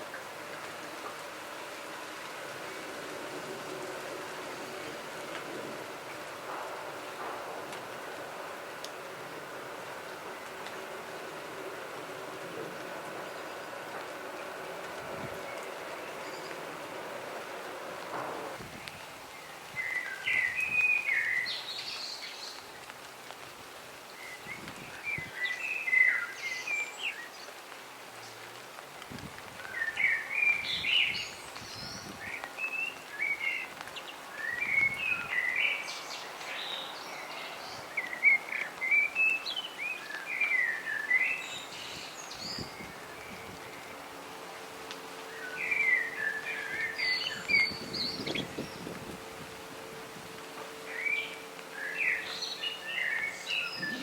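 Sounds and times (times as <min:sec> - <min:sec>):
steady background hiss: 0:00.0 - 0:54.0
songbird chirping: 0:00.9 - 0:23.4, 0:24.0 - 0:28.6, 0:29.6 - 0:54.0.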